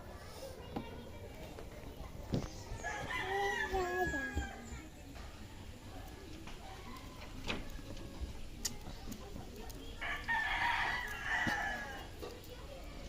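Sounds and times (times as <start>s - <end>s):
rooster crowing: 2.8s - 4.7s.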